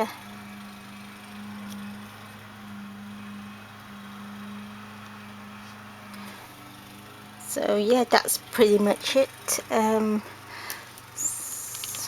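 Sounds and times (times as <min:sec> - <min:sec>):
low room hum: 0:07.4 - 0:12.0.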